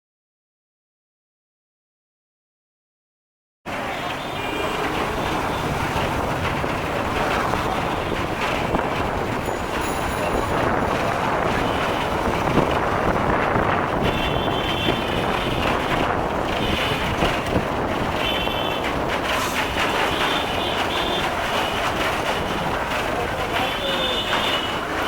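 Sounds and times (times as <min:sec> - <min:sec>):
motorbike engine: 0:03.7 - 0:25.0
road noise: 0:03.7 - 0:25.0
wind rushing over microphone: 0:05.4 - 0:20.0.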